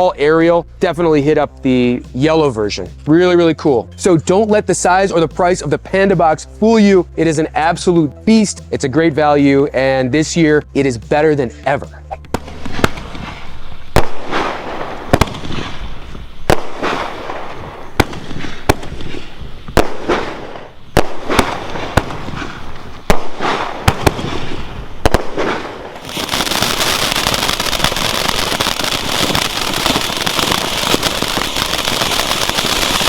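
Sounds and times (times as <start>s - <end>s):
fireworks hiss and crackle: 12.3s - 33.0s.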